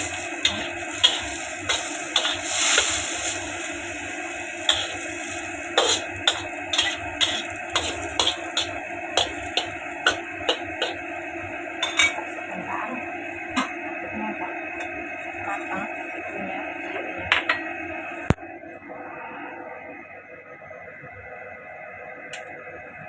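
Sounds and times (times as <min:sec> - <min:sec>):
utensil scraping a pan: 0:00.0 - 0:04.0, 0:04.6 - 0:11.0
steady hiss: 0:00.0 - 0:11.0.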